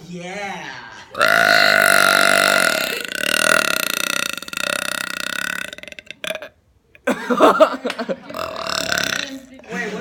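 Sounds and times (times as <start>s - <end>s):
person burping: 1.1s - 6.6s, 8.3s - 9.6s.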